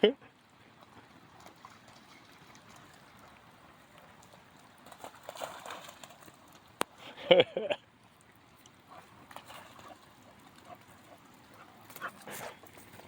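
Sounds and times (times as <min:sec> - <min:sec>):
dog splashing through puddles: 0:00.7 - 0:06.9, 0:08.1 - 0:13.0.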